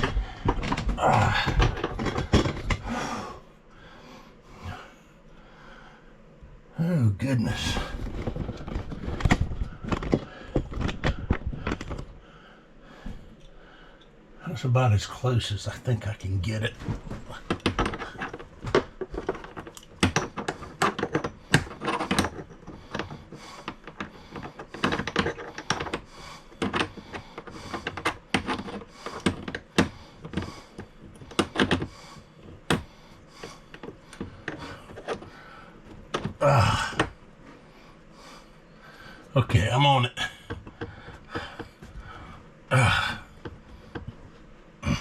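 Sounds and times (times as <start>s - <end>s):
breathy exhale: 2.8s - 6.1s.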